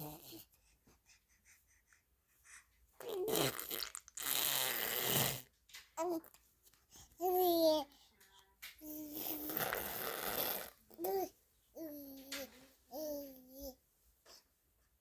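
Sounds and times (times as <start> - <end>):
baby breathy blowing noise: 3.0 - 5.4, 9.1 - 10.8.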